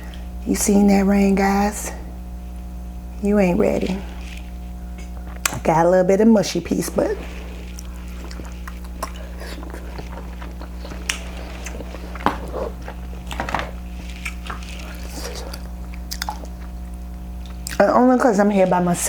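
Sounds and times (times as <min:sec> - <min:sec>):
steady low hum: 0:00.0 - 0:19.0
wet chewing and lip smacks: 0:04.1 - 0:05.7, 0:07.2 - 0:17.9.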